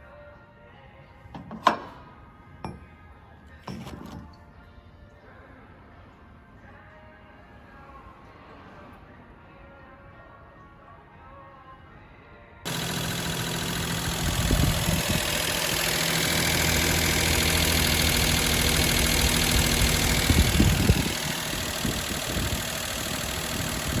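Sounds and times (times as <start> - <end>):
car engine idling: 12.7 - 24.0
low engine knocks: 12.7 - 24.0.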